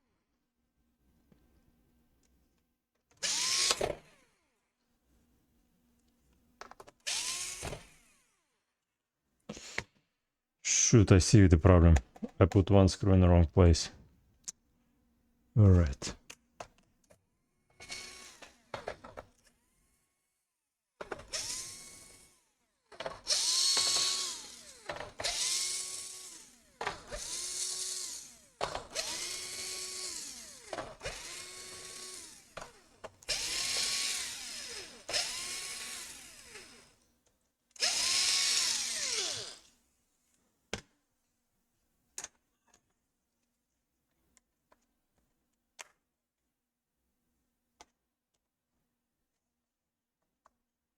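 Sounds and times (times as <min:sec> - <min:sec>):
electric screwdriver whining: 0:03.1 - 0:04.3, 0:07.0 - 0:08.3, 0:17.7 - 0:19.6, 0:21.0 - 0:37.0, 0:37.8 - 0:39.7.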